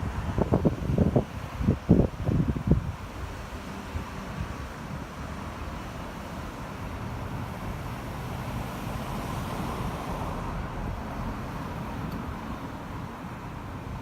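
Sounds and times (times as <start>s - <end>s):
wind buffeting microphone: 0.0s - 5.0s
vehicle rumble: 0.0s - 14.0s.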